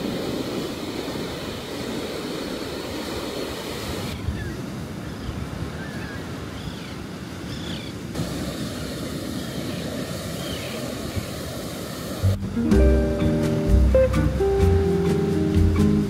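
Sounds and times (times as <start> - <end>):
ocean surf on a beach: 0.0 - 16.0
acoustic guitar music: 12.3 - 16.0.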